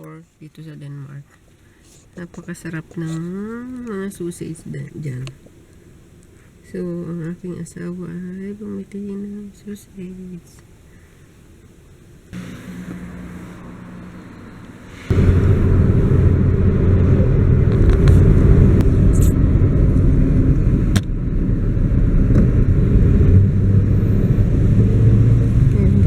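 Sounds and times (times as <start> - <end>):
engine rumbling loudly: 12.4 - 26.0.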